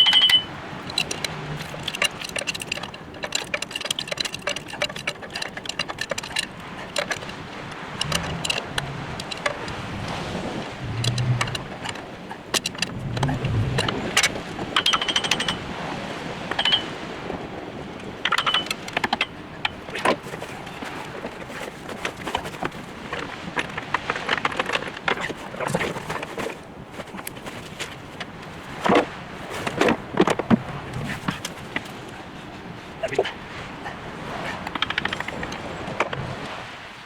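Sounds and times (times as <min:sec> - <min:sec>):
metal tools clinking and clattering: 0:00.0 - 0:09.6, 0:11.0 - 0:15.7, 0:16.5 - 0:16.9, 0:18.2 - 0:32.0.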